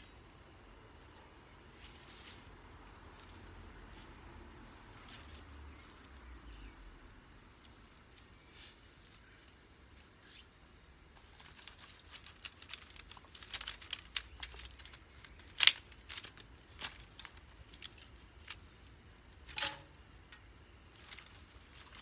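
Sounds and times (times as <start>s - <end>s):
kindling crackling and snapping: 11.1s - 22.0s.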